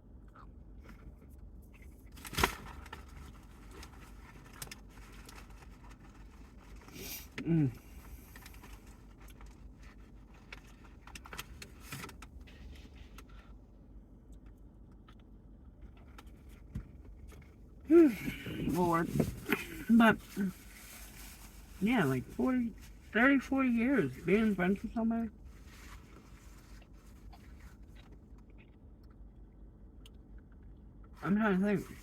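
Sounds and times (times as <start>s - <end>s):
low rumble inside car: 0.0s - 32.0s
small clicks and rustles: 0.3s - 13.6s, 14.3s - 17.6s
person humming: 7.4s - 7.8s.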